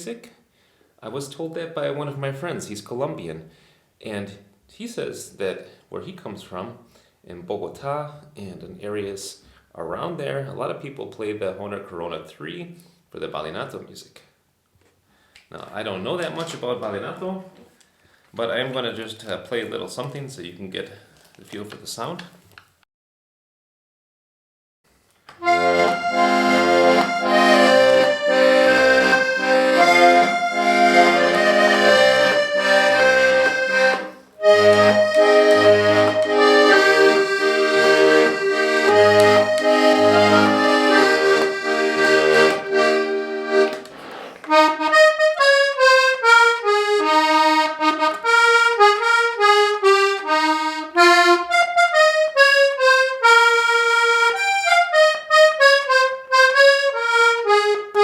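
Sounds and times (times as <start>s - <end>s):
button accordion playing: 25.4s - 58.0s.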